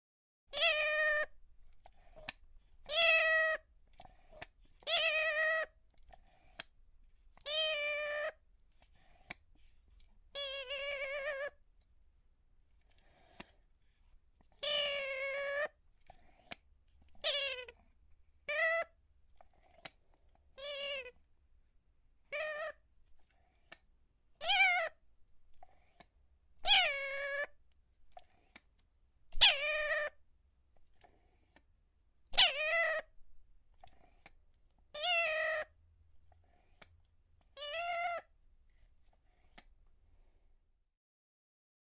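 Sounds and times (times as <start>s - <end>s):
toy doll squeaky calls: 0.5s - 1.4s, 2.9s - 3.7s, 4.8s - 5.8s, 7.5s - 8.4s, 10.4s - 11.6s, 14.6s - 15.8s, 18.5s - 19.0s, 22.3s - 22.8s, 24.4s - 25.0s, 26.6s - 27.6s, 29.3s - 30.2s, 32.3s - 33.1s, 35.0s - 35.8s, 37.6s - 38.3s.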